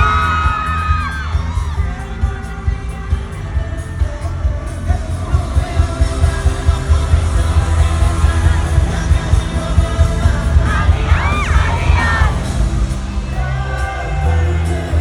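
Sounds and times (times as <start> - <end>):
crowd yelling: 0.0 - 2.7, 6.4 - 15.0
pop song with heavy bass beat: 0.0 - 15.0.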